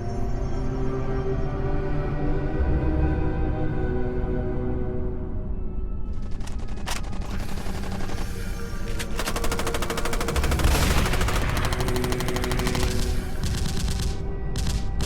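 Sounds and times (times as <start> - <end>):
rapid automatic gunfire: 6.4 - 15.0.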